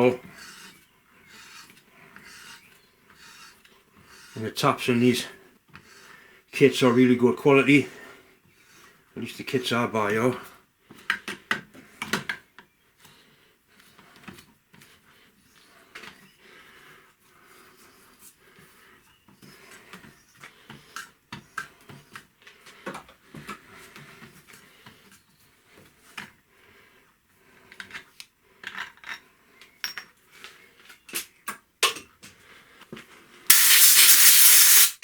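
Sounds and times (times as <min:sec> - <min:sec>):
compressed air burst: 0:33.5 - 0:35.0.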